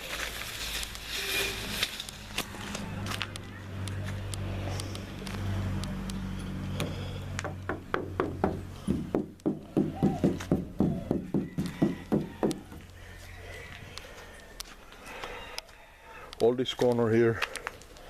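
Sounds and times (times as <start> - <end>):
low engine hum: 1.6 - 14.4
sharp clicks and knocks: 3.2 - 13.0.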